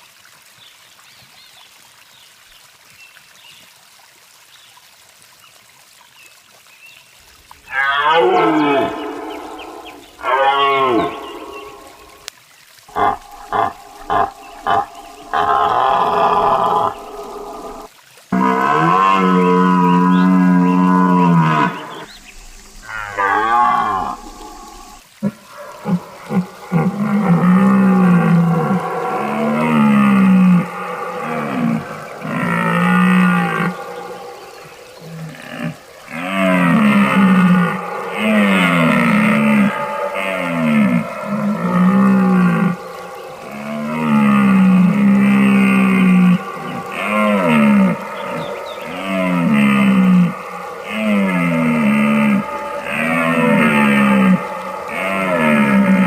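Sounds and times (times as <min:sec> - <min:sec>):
deer bellowing: 0:12.9 - 0:19.9, 0:35.0 - 0:56.0.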